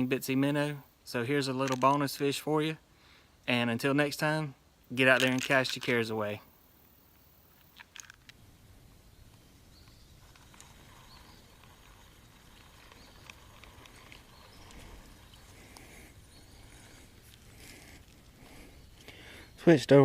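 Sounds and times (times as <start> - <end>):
faint outdoor background: 0.0 - 20.0
handling noises: 9.8 - 19.2.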